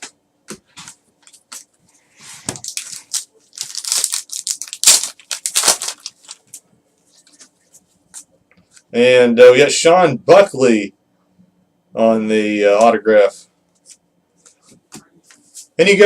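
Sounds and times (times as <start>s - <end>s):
card pack wrapper crinkling: 2.5s - 6.6s.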